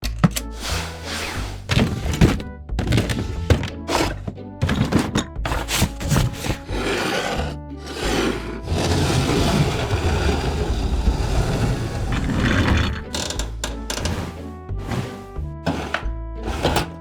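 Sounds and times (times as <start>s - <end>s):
furniture mechanism rattling: 0.0s - 17.0s.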